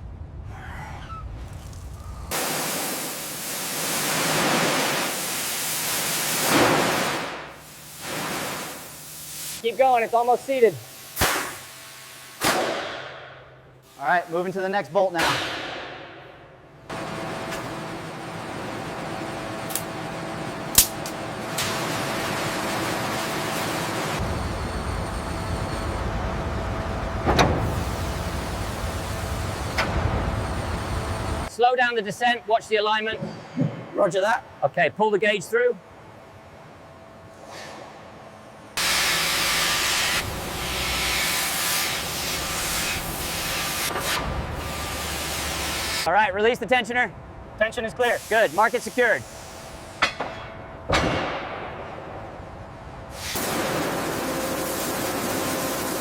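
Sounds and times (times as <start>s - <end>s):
low machinery rumble: 0.0s - 2.4s, 24.2s - 31.5s
low rumble: 0.0s - 2.4s
steady hiss: 1.5s - 12.4s, 13.8s - 15.2s, 47.6s - 50.0s
loud rushing hiss: 1.6s - 12.9s, 13.8s - 15.3s, 23.3s - 31.5s, 38.8s - 46.1s, 47.7s - 50.0s, 53.1s - 56.0s.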